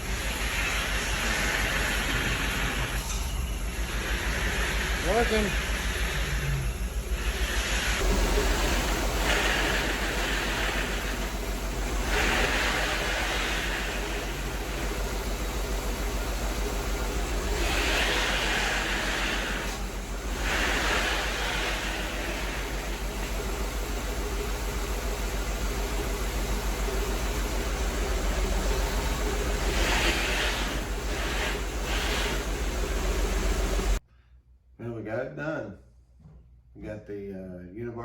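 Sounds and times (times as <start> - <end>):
hissing rush: 0.0 - 34.0
car engine idling: 5.1 - 34.0.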